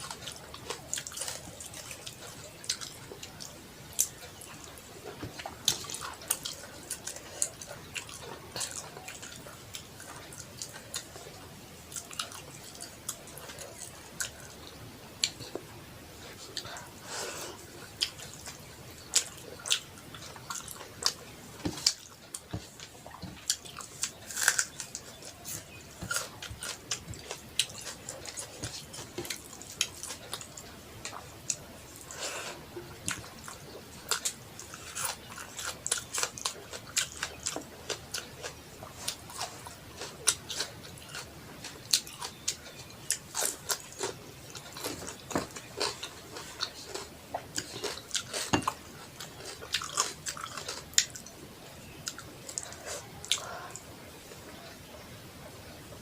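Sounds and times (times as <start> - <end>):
chewing and biting food: 0.0 - 53.9.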